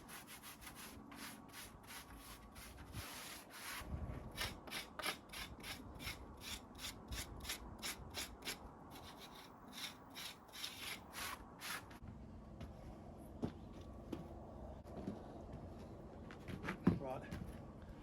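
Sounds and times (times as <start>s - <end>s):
hand tool rasping on hard surface: 0.0s - 11.8s.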